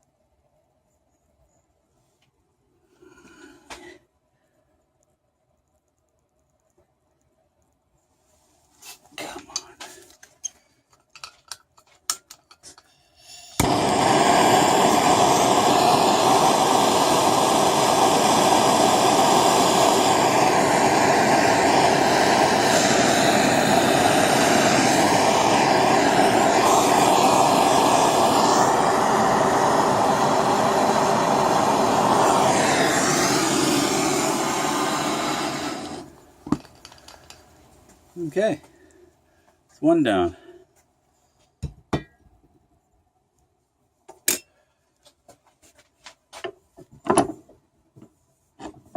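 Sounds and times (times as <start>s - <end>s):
gas torch flame hissing: 13.2s - 38.6s.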